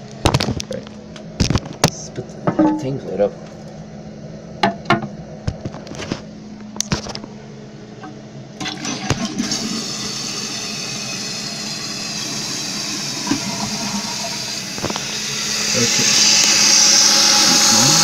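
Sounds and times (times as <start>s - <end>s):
toilet flushing: 8.6s - 18.0s.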